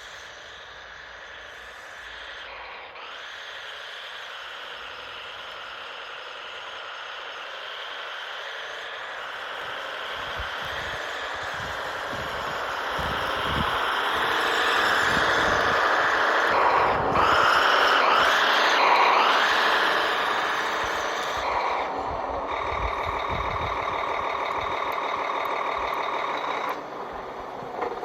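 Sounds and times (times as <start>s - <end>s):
electric motor whining: 0.0s - 28.0s.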